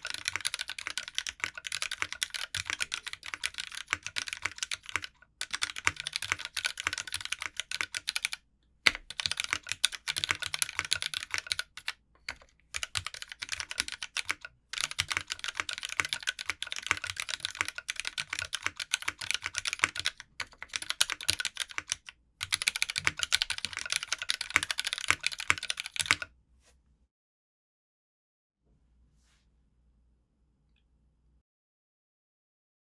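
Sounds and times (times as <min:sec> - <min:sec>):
mechanical keyboard typing: 0:00.0 - 0:26.3.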